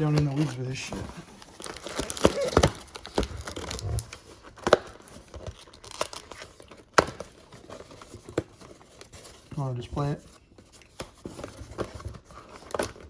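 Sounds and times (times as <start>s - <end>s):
cardboard and wrapping tearing: 0.0s - 10.1s.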